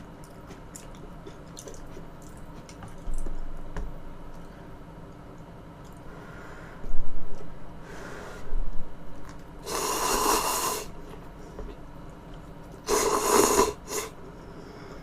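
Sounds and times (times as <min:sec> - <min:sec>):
draw of air: 0:09.6 - 0:11.0
slurping: 0:12.8 - 0:14.1.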